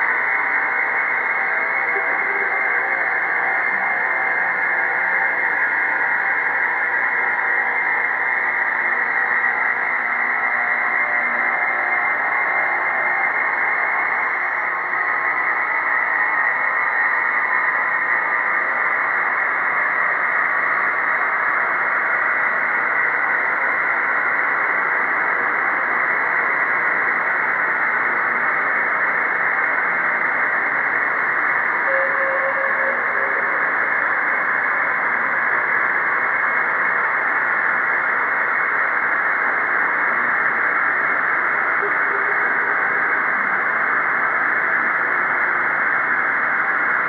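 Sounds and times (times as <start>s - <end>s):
dense noise-like synthesized drone: 0.0s - 47.0s
faint steady tone: 31.8s - 34.1s.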